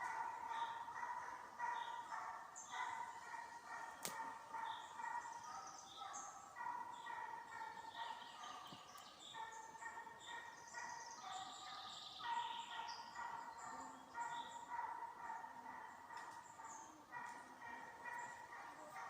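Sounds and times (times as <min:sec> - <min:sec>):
hound baying: 0:00.0 - 0:08.7.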